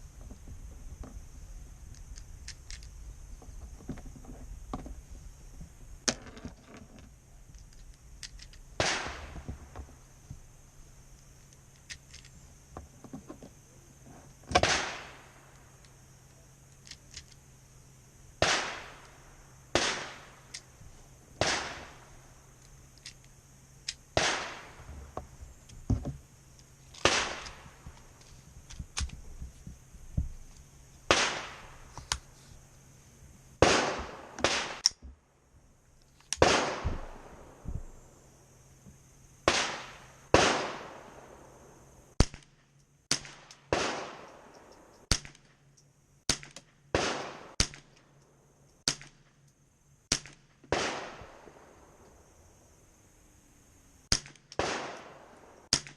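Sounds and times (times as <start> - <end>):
rifle shots with echo: 8.8 - 9.4, 14.6 - 15.3, 18.4 - 19.1, 19.7 - 20.4, 21.4 - 22.1, 24.2 - 24.8, 27.0 - 27.7, 31.1 - 31.8, 33.6 - 34.8, 36.4 - 37.6, 39.4 - 41.4, 43.1 - 44.5, 46.3 - 47.9, 50.1 - 51.7, 54.1 - 55.9.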